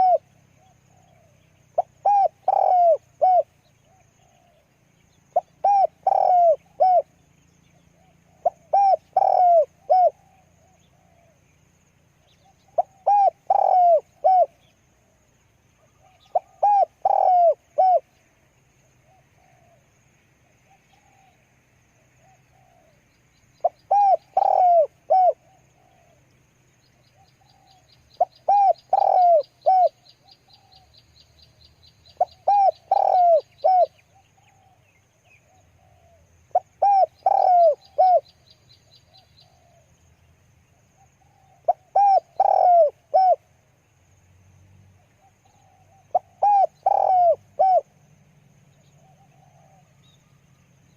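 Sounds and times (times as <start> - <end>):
dove cooing: 0.0 - 4.7, 5.3 - 7.2, 8.0 - 11.4, 12.3 - 14.7, 15.8 - 18.2, 19.0 - 19.8, 20.7 - 21.4, 22.2 - 23.0, 23.6 - 26.2, 27.2 - 30.9, 32.1 - 39.9, 41.2 - 43.5, 45.0 - 48.0, 49.0 - 50.2.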